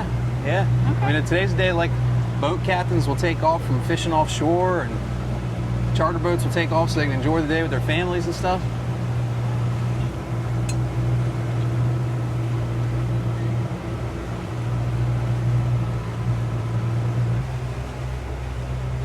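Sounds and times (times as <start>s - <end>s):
motorboat engine humming: 0.0s - 19.0s
water noise: 0.0s - 19.0s
wind: 0.0s - 19.0s.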